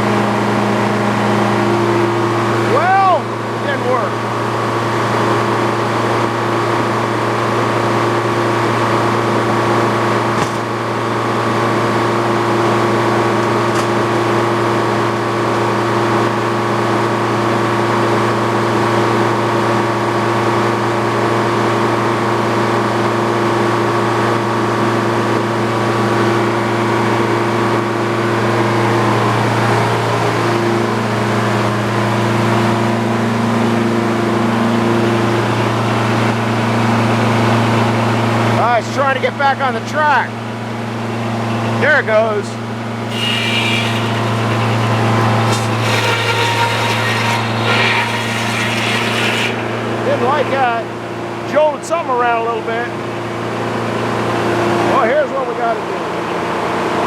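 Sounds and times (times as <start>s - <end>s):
sawmill engine humming: 23.8s - 56.4s.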